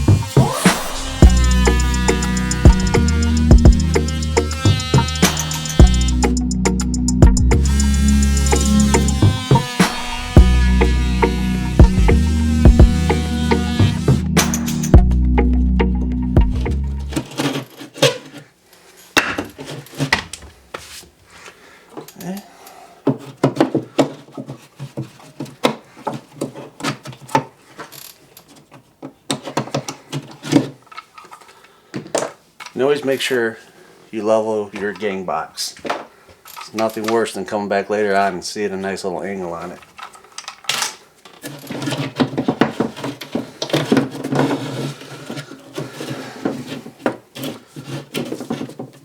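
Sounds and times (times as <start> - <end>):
scraping on drywall: 17.2 - 18.6, 19.4 - 21.1, 41.4 - 49.0.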